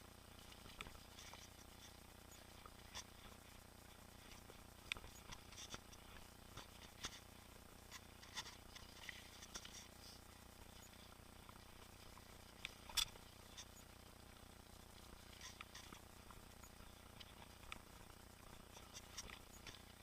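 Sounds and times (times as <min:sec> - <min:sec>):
mountain bike clicks and rattles: 0:12.6 - 0:13.8.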